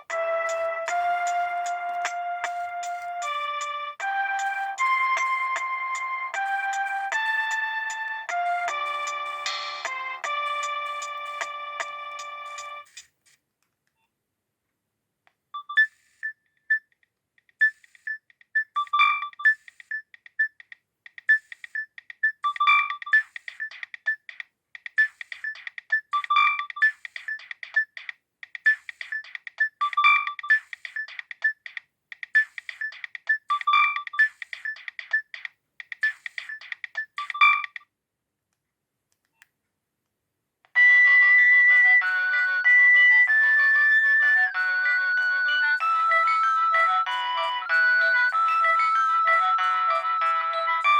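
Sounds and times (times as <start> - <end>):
dense ringtone: 0.1 - 12.9
mobile phone beeping ringtone: 0.1 - 13.0, 32.4 - 34.8, 36.1 - 37.8, 40.8 - 50.9.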